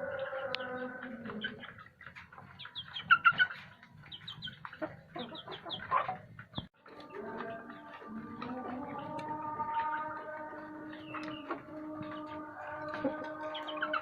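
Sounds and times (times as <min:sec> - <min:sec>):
chickens clucking: 0:00.0 - 0:14.0
loud chicken calls: 0:07.0 - 0:14.0.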